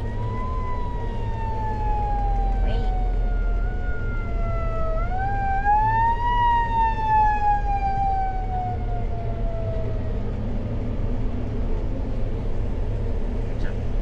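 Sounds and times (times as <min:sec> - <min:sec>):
fire truck siren wailing: 0:00.0 - 0:10.9
road noise rumble: 0:00.0 - 0:14.0.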